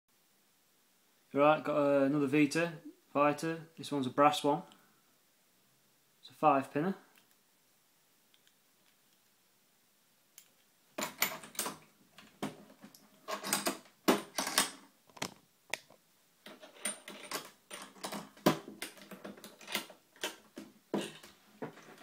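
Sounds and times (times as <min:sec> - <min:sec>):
lockpicking tools clicking in lock: 0:16.5 - 0:20.5.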